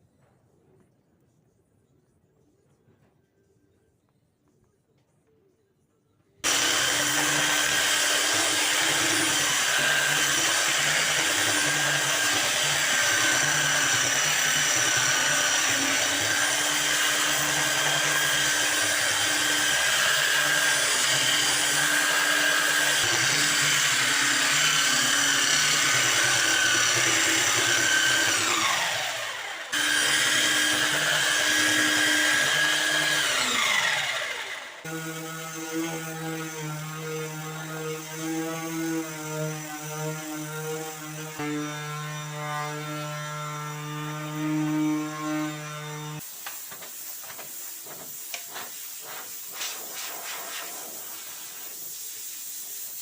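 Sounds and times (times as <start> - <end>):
electric power tool motor: 6.4 - 46.3.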